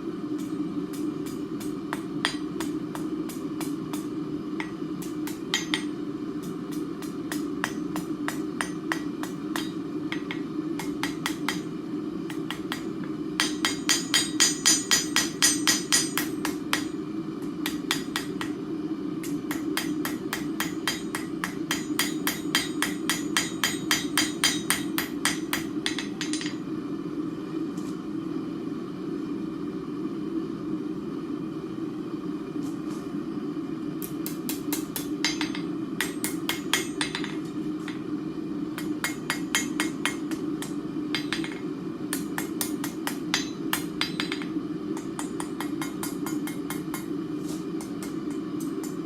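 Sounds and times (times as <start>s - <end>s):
steady low hum: 0.0s - 49.0s
hammer striking hot steel on anvil: 0.4s - 26.7s, 34.0s - 38.1s, 38.7s - 49.0s.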